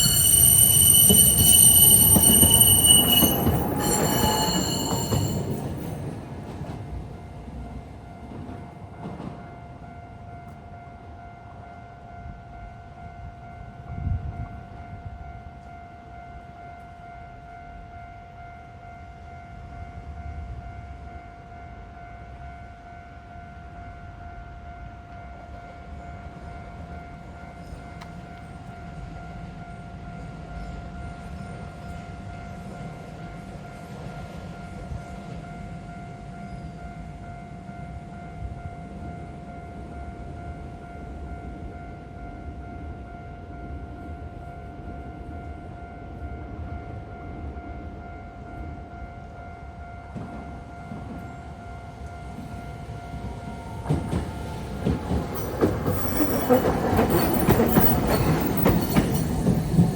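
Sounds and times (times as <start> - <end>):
level crossing warning tone: 0.0 - 6.2
tram rumbling: 0.0 - 17.2, 23.7 - 59.9.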